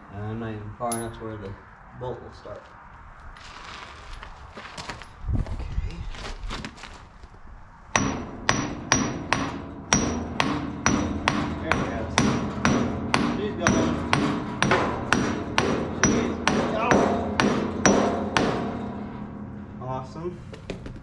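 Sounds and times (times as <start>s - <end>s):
hammer blows on steel: 8.0s - 20.0s.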